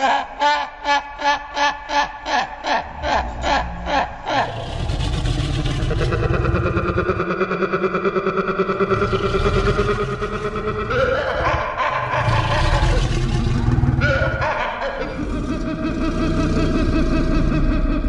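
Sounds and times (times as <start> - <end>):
creature roar: 2.9 - 7.2, 8.7 - 17.9.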